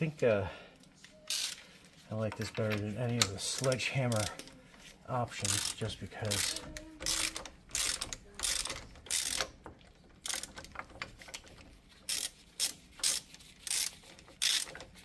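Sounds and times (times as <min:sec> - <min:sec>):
hand ratchet clicking: 0:01.3 - 0:01.6, 0:02.6 - 0:04.5, 0:05.4 - 0:15.0.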